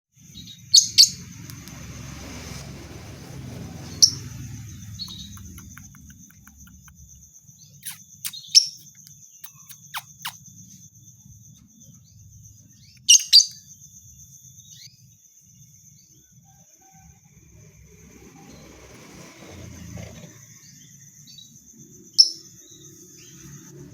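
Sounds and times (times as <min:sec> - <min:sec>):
lovebird chirping: 0:03.6 - 0:11.0, 0:12.0 - 0:15.0.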